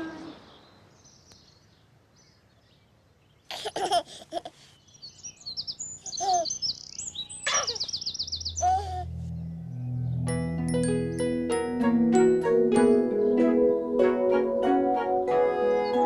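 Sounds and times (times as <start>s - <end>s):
birds chirping: 0.0s - 11.5s
baby giggling: 3.5s - 4.7s, 6.1s - 6.5s, 7.5s - 7.9s, 8.6s - 9.1s.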